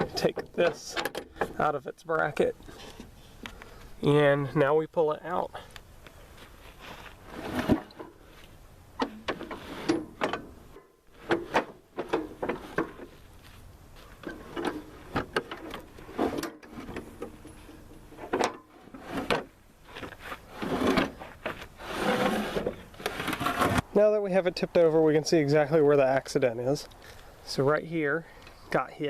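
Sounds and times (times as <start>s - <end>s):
metal deck clanking and scraping: 9.0s - 13.2s, 14.2s - 23.8s.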